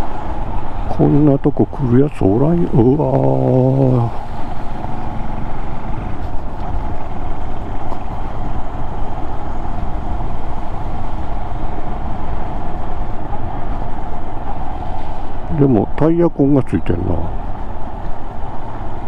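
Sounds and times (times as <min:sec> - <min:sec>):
wind and road noise: 0:00.0 - 0:19.0
motorcycle engine running: 0:03.2 - 0:15.4.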